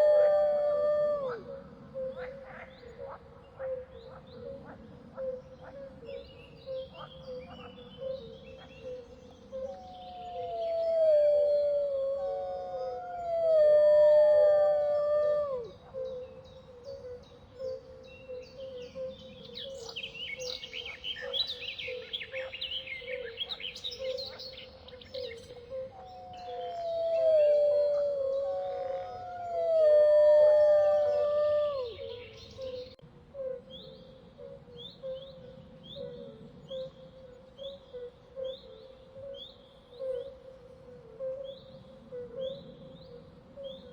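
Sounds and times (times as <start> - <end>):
wolves howling: 0.0 - 1.5, 9.8 - 15.9, 26.0 - 32.9.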